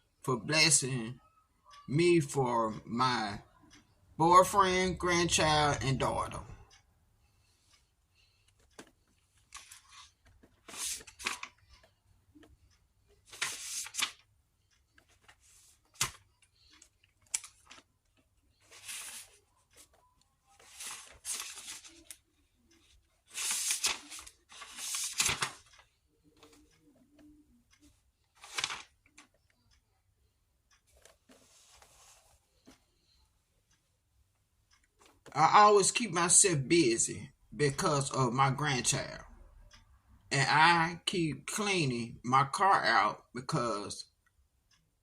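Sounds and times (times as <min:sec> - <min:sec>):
rustling and scraping: 0:30.9 - 0:32.9.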